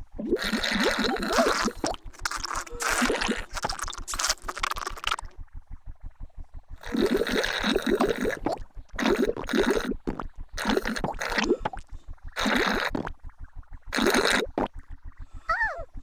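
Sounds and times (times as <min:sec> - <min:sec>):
low even pulsing: 0:00.0 - 0:14.0, 0:14.6 - 0:16.0
bubbly slurping through a straw: 0:00.1 - 0:05.4, 0:06.8 - 0:14.9.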